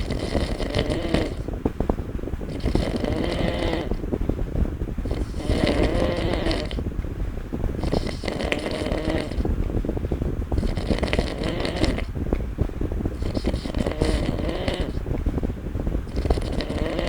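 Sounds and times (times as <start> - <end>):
person snoring: 0.0 - 1.5, 2.5 - 4.0, 5.1 - 6.8, 7.8 - 9.5, 10.6 - 12.1, 13.2 - 15.0, 16.1 - 17.0.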